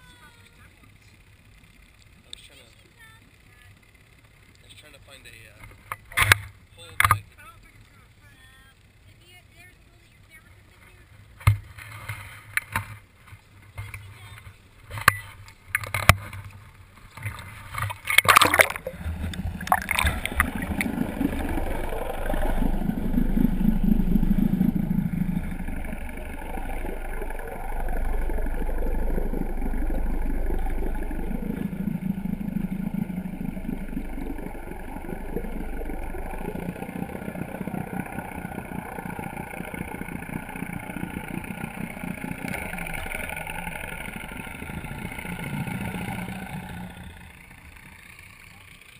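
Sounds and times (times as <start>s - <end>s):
motorboat engine rumble: 0.0s - 48.9s
water rushing past: 17.2s - 48.5s.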